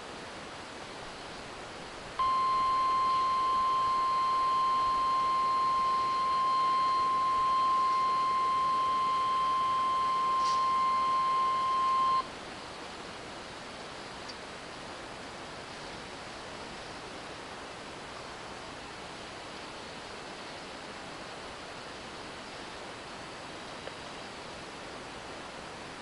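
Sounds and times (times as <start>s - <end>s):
high alarm beep: 2.2s - 12.3s
radio hiss: 2.2s - 12.3s.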